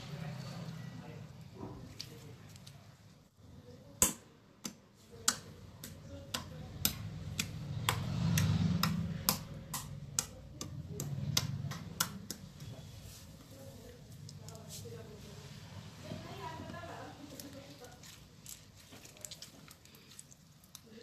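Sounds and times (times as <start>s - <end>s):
slime squishing: 16.7s - 21.0s.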